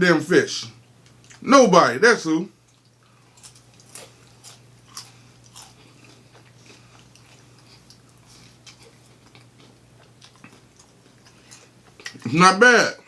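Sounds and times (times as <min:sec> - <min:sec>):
person chewing crisply: 0:02.6 - 0:12.4.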